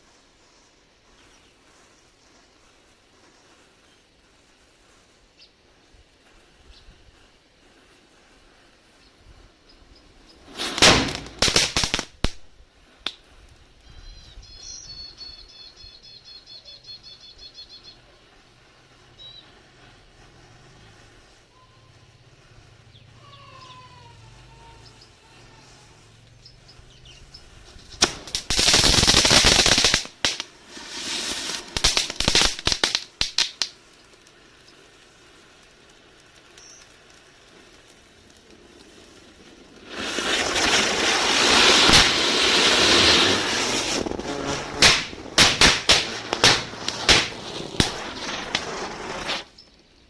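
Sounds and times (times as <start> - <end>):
fountain firework hissing sparks: 0.0 - 14.4, 15.2 - 49.9
firecracker cracks and pops: 10.1 - 13.9, 27.6 - 49.9.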